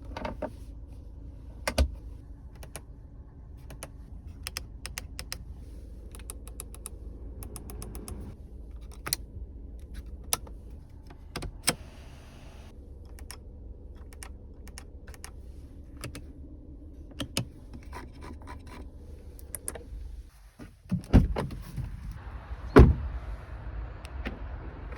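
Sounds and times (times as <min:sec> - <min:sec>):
steady low hum: 0:00.0 - 0:20.5
switches and buttons clicking: 0:03.6 - 0:05.4, 0:06.1 - 0:09.2, 0:13.0 - 0:15.4.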